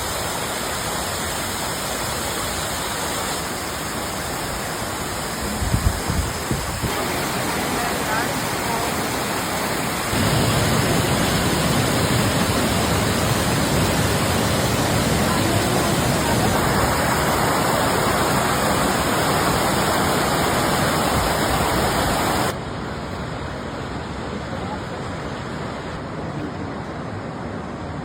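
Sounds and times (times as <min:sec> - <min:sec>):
waterfall rushing: 0:00.0 - 0:27.9.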